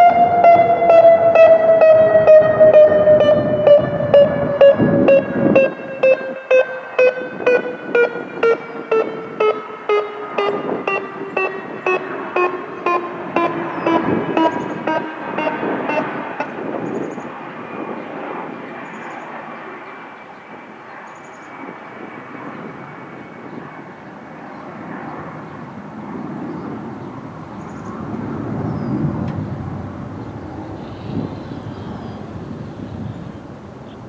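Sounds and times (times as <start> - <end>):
electronic siren pulsing tone: 0.0 - 17.5
rushing outdoor noise: 0.0 - 34.0.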